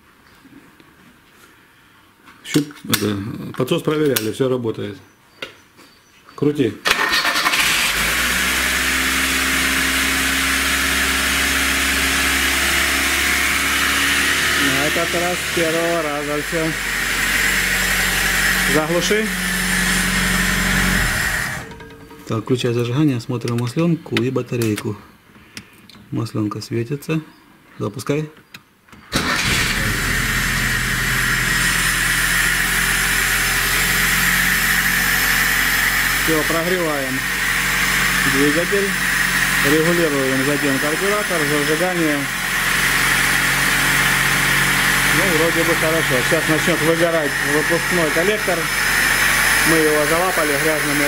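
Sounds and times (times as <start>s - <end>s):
car engine starting and running: 6.8s - 22.5s, 29.1s - 51.0s.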